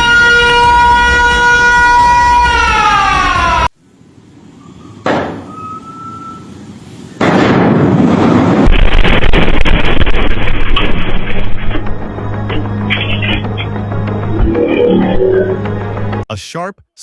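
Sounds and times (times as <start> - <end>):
loud rumbling noise: 8.0 - 16.2
falling horn-like tone: 14.2 - 15.9.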